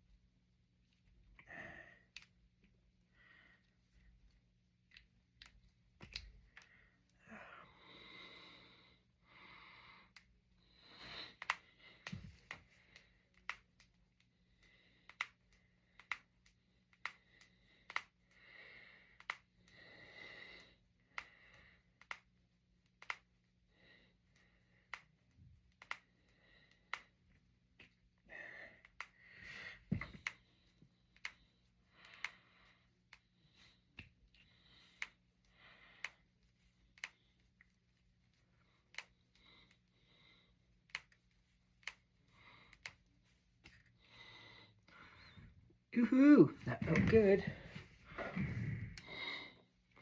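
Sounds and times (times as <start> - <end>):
soft breaths: 0.1 - 50.0
knuckles cracking: 4.9 - 6.8, 10.9 - 14.0, 15.0 - 18.2, 19.2 - 19.4, 23.0 - 23.3, 25.7 - 27.1.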